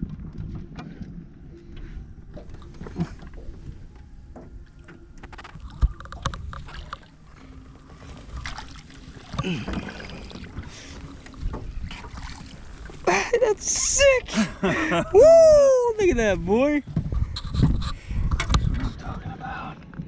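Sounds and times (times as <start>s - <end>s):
knocks and rattles on boat: 0.0s - 7.1s, 8.0s - 13.0s, 16.1s - 19.3s.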